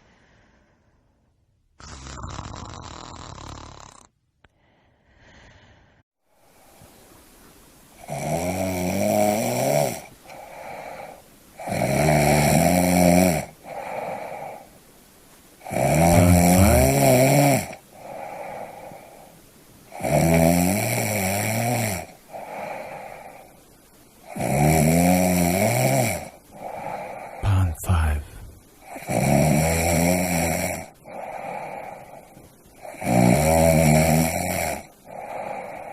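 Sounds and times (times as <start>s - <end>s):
person snoring: 1.8s - 4.1s, 8.0s - 14.7s, 15.6s - 19.3s, 19.9s - 23.6s, 24.2s - 35.9s.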